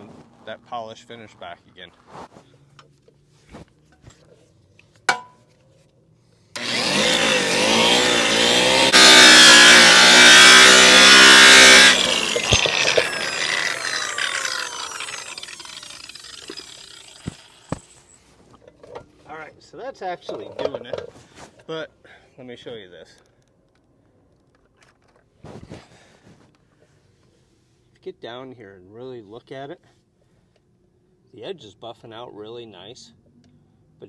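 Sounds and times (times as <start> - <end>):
rotary buffer whining: 6.6 - 18.2.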